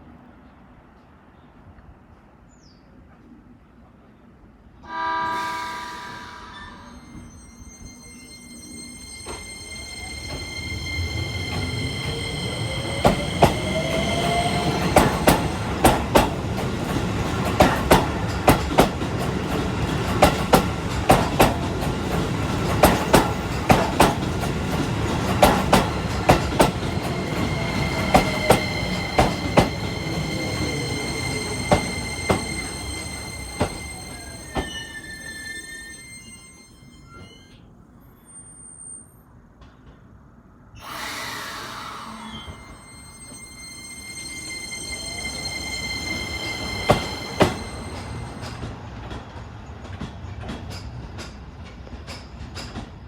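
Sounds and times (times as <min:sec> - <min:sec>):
electric train rumbling past: 0:04.7 - 0:53.0
train motor whine: 0:04.8 - 0:39.2, 0:40.8 - 0:48.8
wheels clacking over rail joints: 0:10.1 - 0:35.2.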